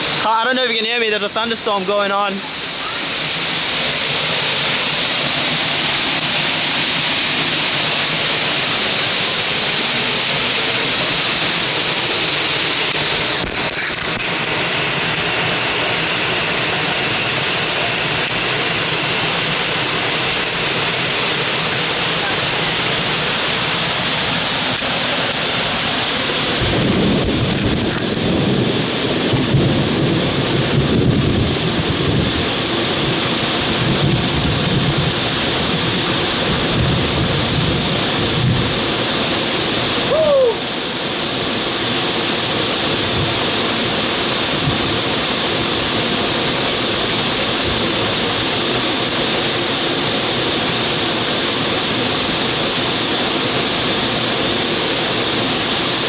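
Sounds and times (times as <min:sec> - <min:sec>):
heavy rain: 0:00.0 - 0:56.0
rushing waterfall: 0:00.0 - 0:56.0
thunder rumble: 0:26.6 - 0:38.8.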